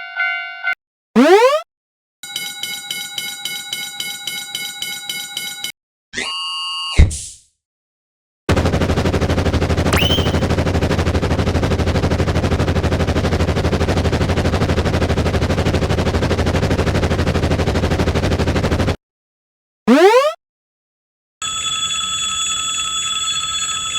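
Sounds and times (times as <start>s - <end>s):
rising whistle-like swoop: 10.0s - 10.5s.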